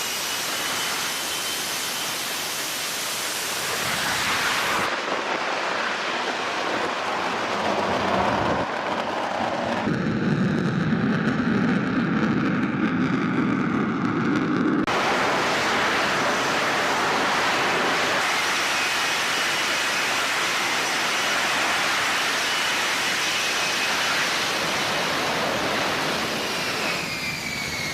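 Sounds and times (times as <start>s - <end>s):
jet engine roaring: 0.0s - 27.9s
faint high whines: 12.7s - 27.9s.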